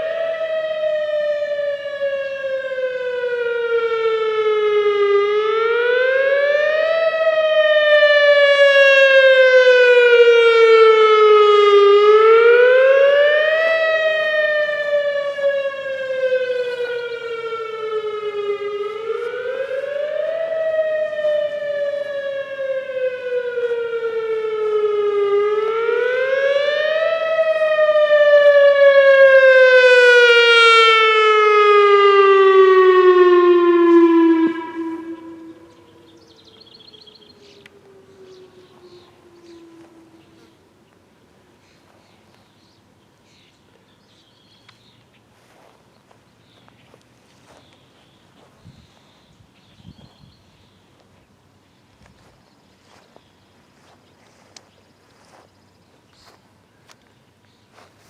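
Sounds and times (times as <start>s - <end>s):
warning siren rise-and-fall tone: 0.0s - 40.8s.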